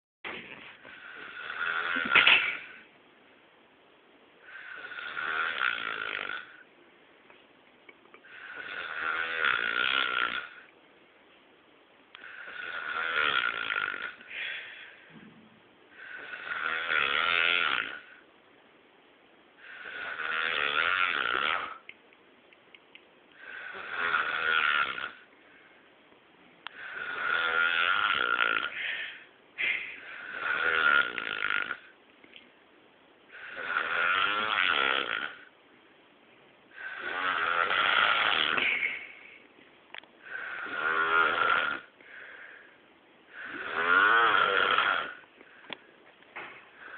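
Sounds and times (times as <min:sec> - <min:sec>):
person snoring: 0:00.8 - 0:02.9, 0:04.4 - 0:06.6, 0:08.2 - 0:10.7, 0:12.2 - 0:18.2, 0:19.6 - 0:21.9, 0:23.4 - 0:25.3, 0:26.7 - 0:31.9, 0:33.3 - 0:35.5, 0:36.7 - 0:39.4, 0:40.2 - 0:42.7, 0:43.3 - 0:45.3.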